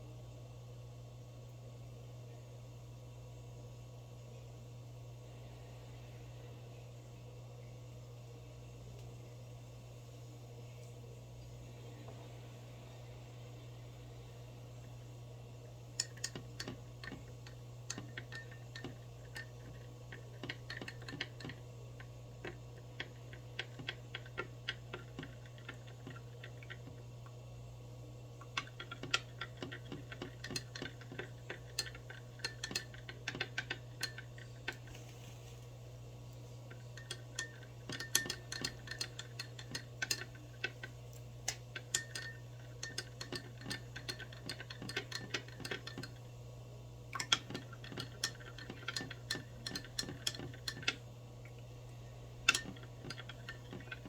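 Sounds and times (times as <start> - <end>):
low steady hum: 0.0 - 54.0
metal spoon clinking against glass: 16.0 - 21.6, 28.5 - 34.8, 36.7 - 40.9, 41.5 - 46.2, 47.2 - 51.0, 52.4 - 54.0.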